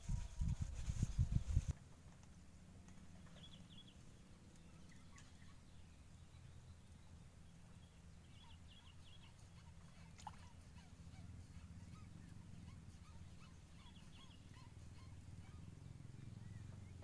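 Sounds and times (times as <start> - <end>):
faint bird-like chirps: 3.3 - 7.0, 8.2 - 17.0.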